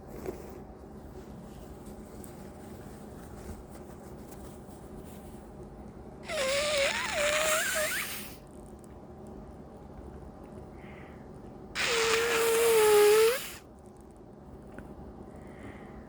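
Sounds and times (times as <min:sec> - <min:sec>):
person blowing nose: 0:06.2 - 0:08.4, 0:11.8 - 0:13.6.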